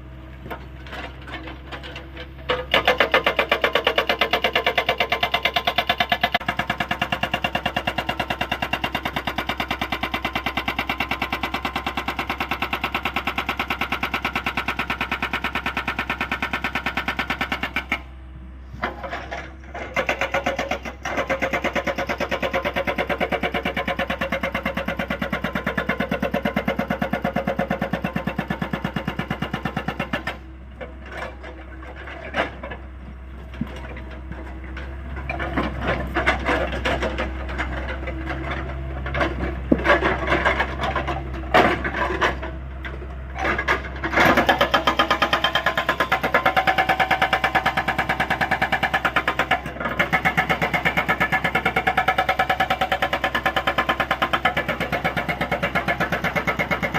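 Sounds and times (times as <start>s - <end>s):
excavator engine running: 0.0s - 56.9s
hydraulic rock breaker hammering: 2.4s - 18.1s, 18.8s - 56.9s
knocks and clatters: 29.5s - 47.4s.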